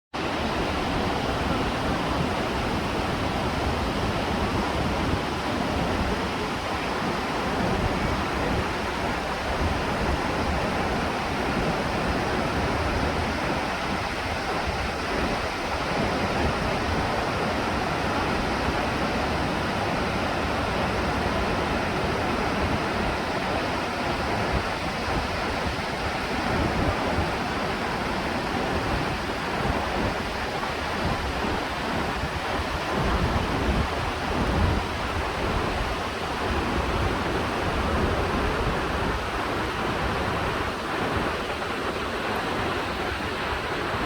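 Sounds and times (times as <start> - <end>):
waterfall rushing: 0.2 - 44.0.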